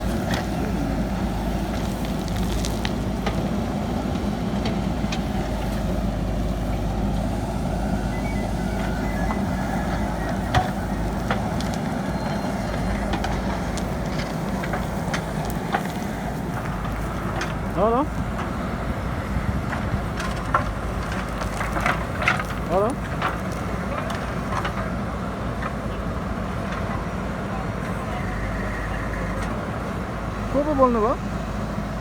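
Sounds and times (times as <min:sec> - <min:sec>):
diesel engine rumbling: 0:00.0 - 0:32.0.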